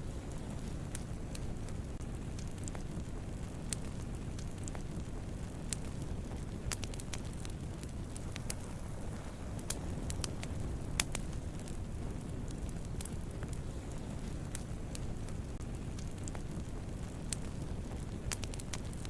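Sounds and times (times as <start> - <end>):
campfire flames rumbling: 0.0 - 19.0
fire crackles and pops: 0.0 - 19.0.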